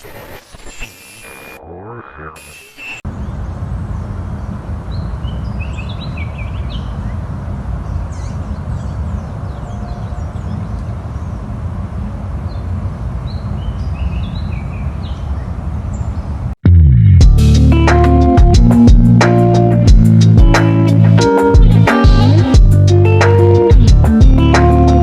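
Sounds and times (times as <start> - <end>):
small birds chirping: 0.0 - 11.6, 12.4 - 16.5
low outdoor rumble: 3.1 - 14.0.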